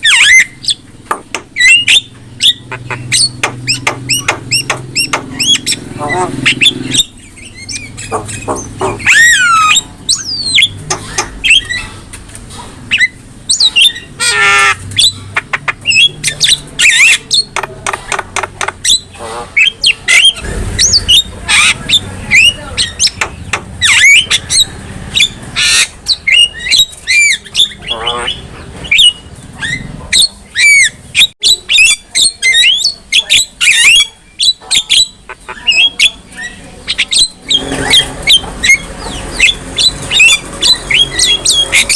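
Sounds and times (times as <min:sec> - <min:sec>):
bird whistling chatter: 0:00.0 - 0:00.8, 0:01.6 - 0:11.9
bird harsh squawks: 0:00.0 - 0:00.9, 0:01.6 - 0:12.1, 0:12.9 - 0:41.9.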